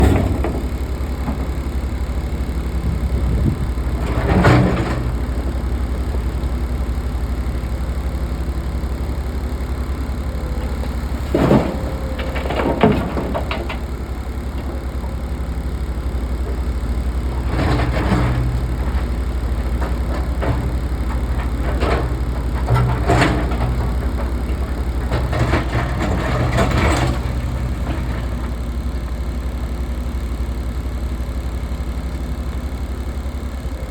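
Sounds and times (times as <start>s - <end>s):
excavator diesel engine running: 0.0s - 33.9s
clattering and rattling: 3.2s - 6.4s, 11.2s - 14.8s, 17.2s - 28.8s.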